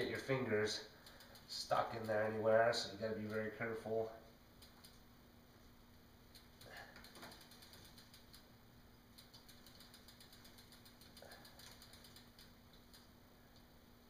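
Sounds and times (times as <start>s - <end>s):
bicycle freewheel clicking: 0.0s - 3.6s, 4.6s - 5.0s, 6.2s - 13.2s.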